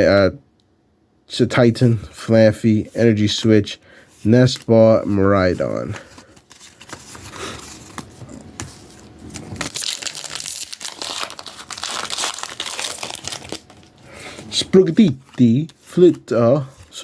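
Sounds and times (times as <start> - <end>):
foil wrapper tearing and crinkling: 9.3 - 14.5.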